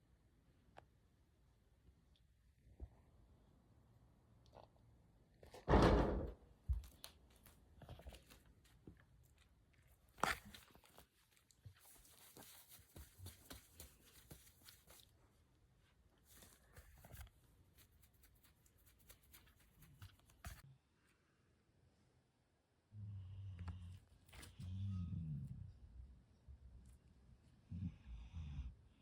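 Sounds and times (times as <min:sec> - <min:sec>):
faint clicks and rustles: 0:06.6 - 0:20.7
dog snoring: 0:27.7 - 0:28.8.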